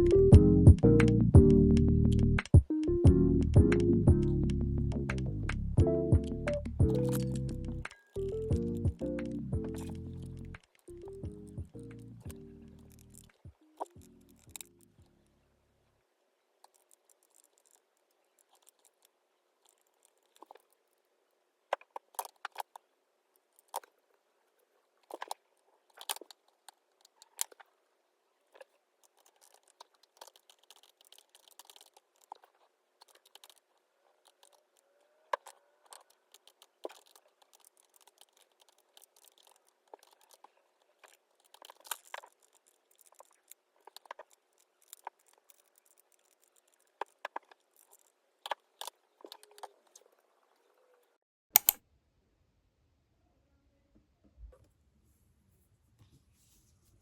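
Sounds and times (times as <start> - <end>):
small clicks and taps: 0.8 - 15.1, 51.6 - 51.8
soft paper rustling: 16.5 - 51.0, 55.0 - 57.0.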